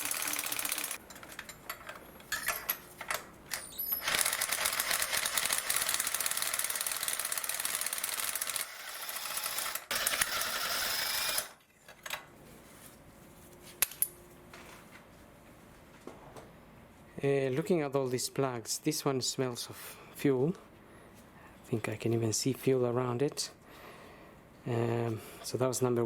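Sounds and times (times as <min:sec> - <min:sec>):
ratchet wrench clicking: 0:00.0 - 0:01.0.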